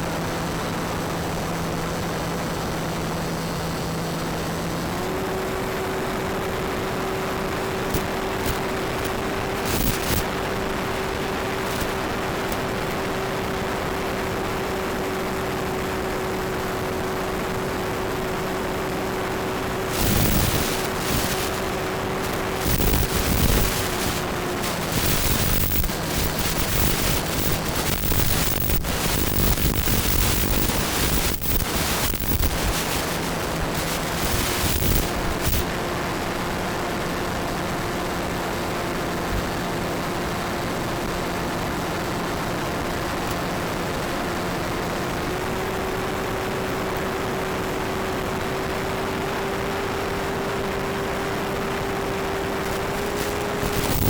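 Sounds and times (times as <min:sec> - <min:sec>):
loud irregular crackling: 0:07.4 - 0:14.1, 0:16.1 - 0:35.8, 0:52.1 - 0:54.0.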